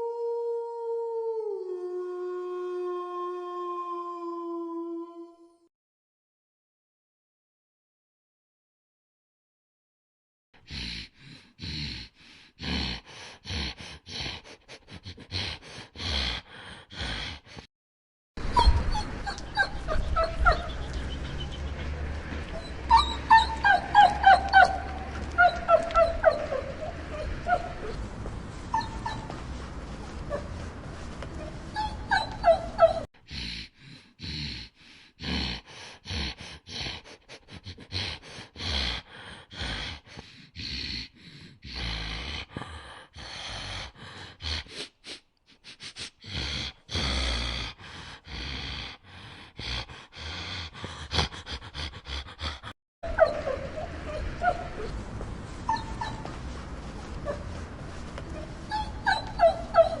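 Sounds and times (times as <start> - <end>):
pups whimpering and yipping: 18.4 - 28.0, 28.7 - 29.6, 31.3 - 33.1, 53.1 - 56.6, 57.2 - 60.0.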